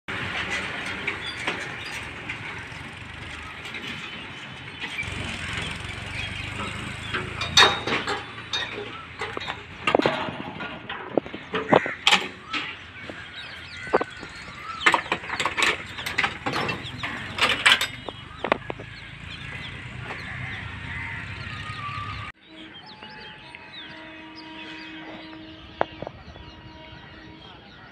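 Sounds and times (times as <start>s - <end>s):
traffic engines rumbling: 0.0s - 27.9s
short sharp horn honks: 22.6s - 27.6s.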